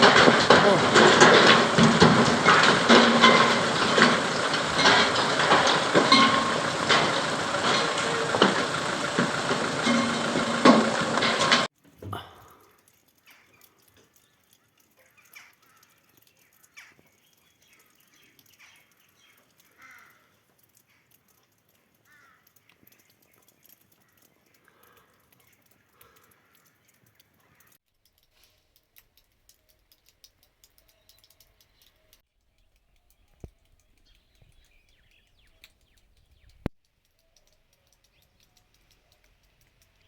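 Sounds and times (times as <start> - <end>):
faint ticks and taps: 11.8 - 40.0
sharp clicks: 12.5 - 40.0.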